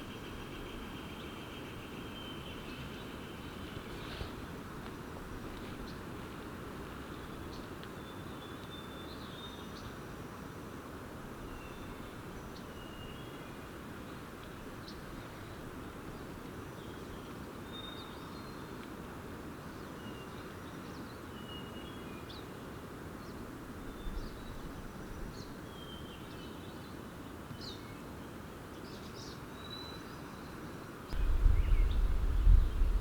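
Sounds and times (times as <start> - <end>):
steady background hiss: 0.0 - 33.0
low rumble: 31.2 - 33.0.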